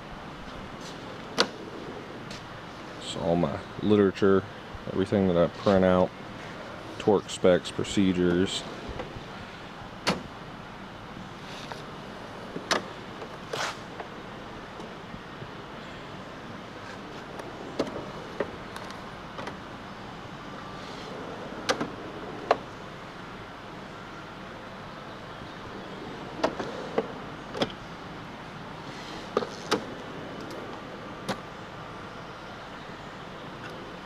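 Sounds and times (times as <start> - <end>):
steady background noise: 0.0 - 34.0
tool box drawers sliding: 12.6 - 13.9, 28.8 - 31.4.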